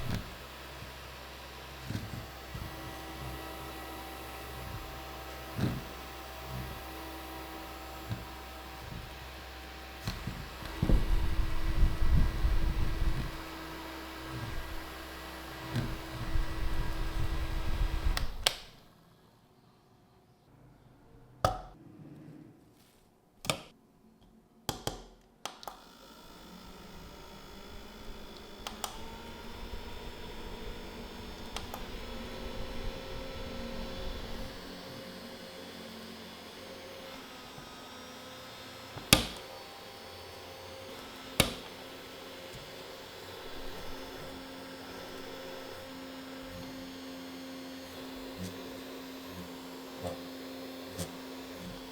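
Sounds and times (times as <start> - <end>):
desk fan humming: 0.0 - 18.9, 25.8 - 51.9
sharp clicks and taps: 23.4 - 25.8.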